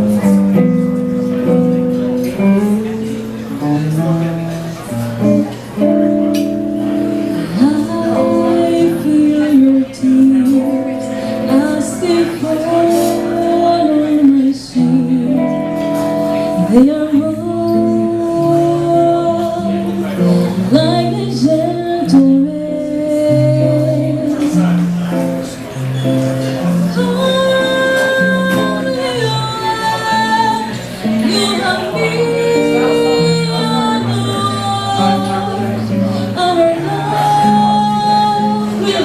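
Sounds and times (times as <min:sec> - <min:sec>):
guitar accompaniment: 0:00.0 - 0:39.0
woman singing jazz ballad: 0:06.5 - 0:25.3, 0:26.6 - 0:39.0.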